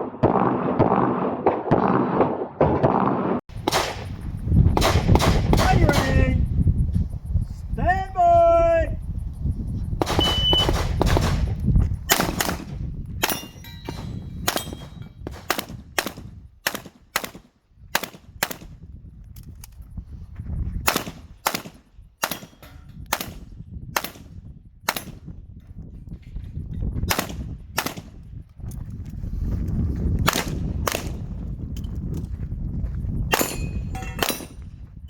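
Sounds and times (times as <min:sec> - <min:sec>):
handgun shots: 0:03.6 - 0:04.2, 0:04.8 - 0:06.3, 0:10.0 - 0:18.6, 0:20.9 - 0:23.4.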